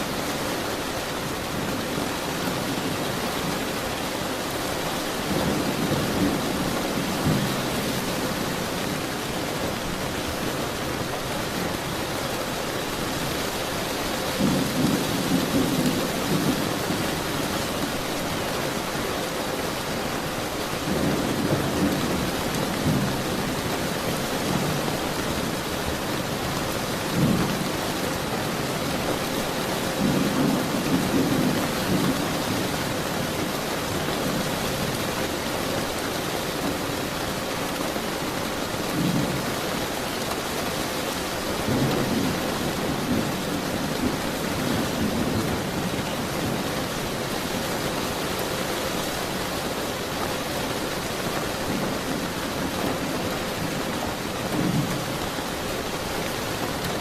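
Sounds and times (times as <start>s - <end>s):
steady rain falling: 0.0s - 57.0s
low thunder rumbling: 20.8s - 35.0s.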